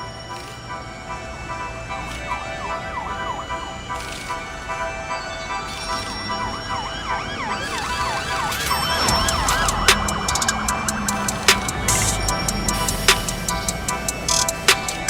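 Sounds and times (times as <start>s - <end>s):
siren-like synth wailing: 0.0s - 15.0s
electronic beat with percussion hits: 7.6s - 15.0s.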